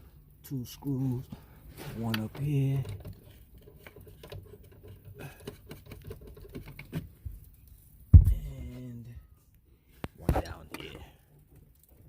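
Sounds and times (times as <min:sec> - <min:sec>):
sharp thump: 0:08.1 - 0:08.5.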